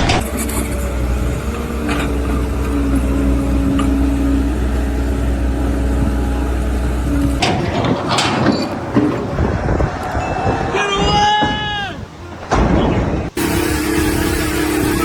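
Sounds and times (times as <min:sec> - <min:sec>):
engine running: 0:00.0 - 0:09.6, 0:13.3 - 0:15.0.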